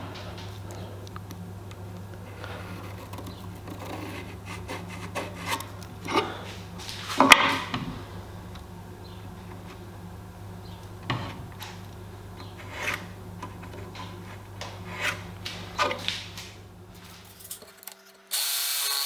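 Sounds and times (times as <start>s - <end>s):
steady low hum: 0.0s - 17.7s
wooden pieces rubbing together: 2.0s - 7.7s, 12.4s - 18.0s.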